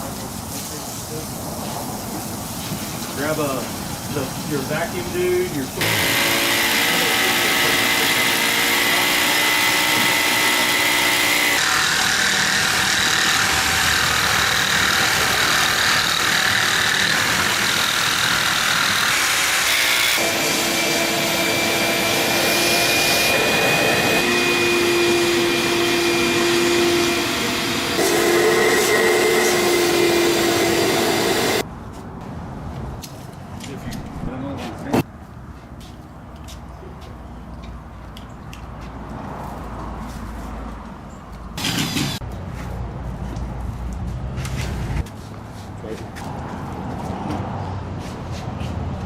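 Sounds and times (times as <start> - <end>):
shop vacuum whining: 5.8 - 31.6.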